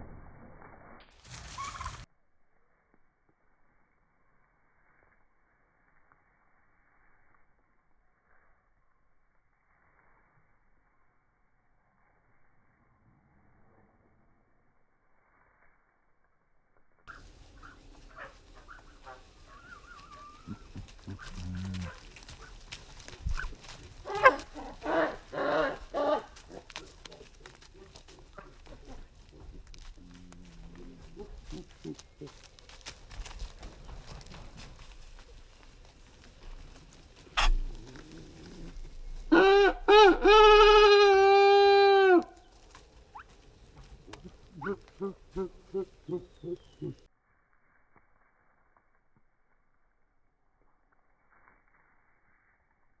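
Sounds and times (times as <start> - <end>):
farm animals calling: 1.3 - 2.1, 17.1 - 47.1.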